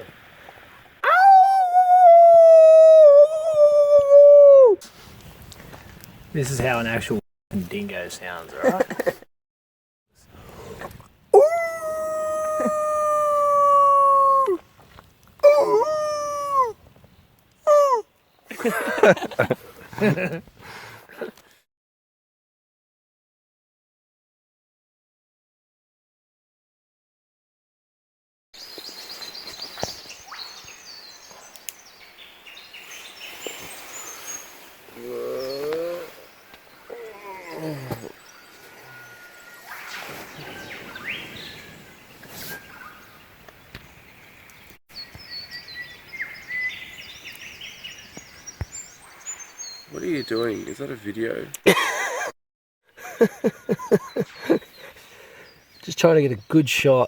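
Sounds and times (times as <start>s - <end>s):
dog howling: 1.0s - 4.8s, 11.4s - 14.6s, 15.4s - 16.8s, 17.7s - 18.0s
wavering wailing bird call: 1.0s - 4.8s, 11.4s - 14.6s, 15.4s - 16.8s, 17.7s - 18.0s, 34.9s - 41.8s
birds chirping and twittering: 28.6s - 51.5s, 52.9s - 57.0s.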